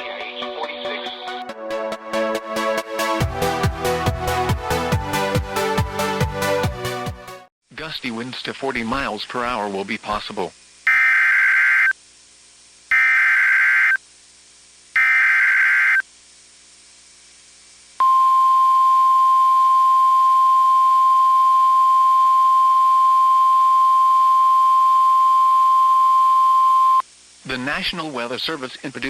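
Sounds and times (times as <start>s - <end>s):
screeching digital data bursts: 10.9s - 12.0s, 12.9s - 14.0s, 15.0s - 16.0s.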